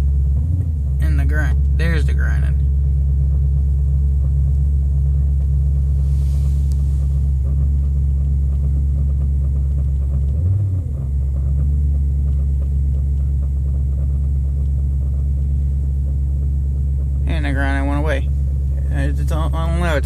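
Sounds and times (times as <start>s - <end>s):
car engine idling: 0.0s - 20.0s
grinding rubbing noise: 3.2s - 16.4s.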